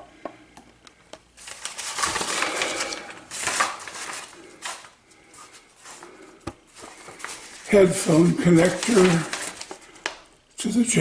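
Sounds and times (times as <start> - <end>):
scratchy rustling: 1.4 - 6.2, 6.8 - 9.9.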